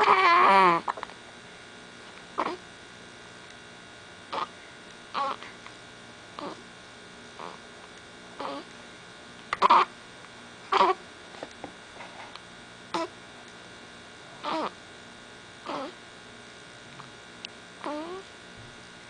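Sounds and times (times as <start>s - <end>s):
pet hiccuping: 0.0s - 1.0s, 2.4s - 2.6s, 4.3s - 4.5s, 5.1s - 5.5s, 6.4s - 6.6s, 7.4s - 7.6s, 8.4s - 8.7s, 9.6s - 9.9s, 10.7s - 11.0s, 12.9s - 13.1s, 14.4s - 14.8s, 15.6s - 16.0s, 17.8s - 18.2s
electrical hum: 0.0s - 19.0s.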